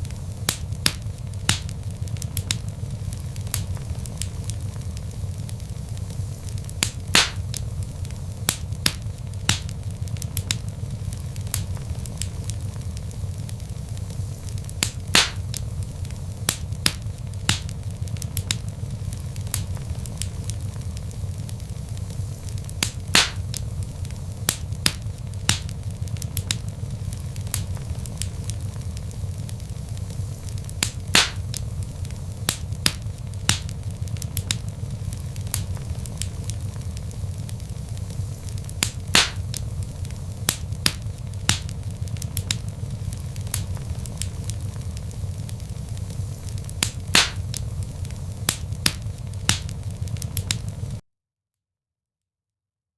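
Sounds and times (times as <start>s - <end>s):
logs crackling and popping: 0.0s - 51.0s
low rumble of flames: 0.0s - 51.0s
loud wood snaps: 0.5s - 2.6s, 6.8s - 7.6s, 8.5s - 10.6s, 14.8s - 15.6s, 16.5s - 18.6s, 22.8s - 23.6s, 24.5s - 26.6s, 30.6s - 31.6s, 32.4s - 34.7s, 38.8s - 39.6s, 40.4s - 44.4s, 46.8s - 47.6s, 48.4s - 50.7s.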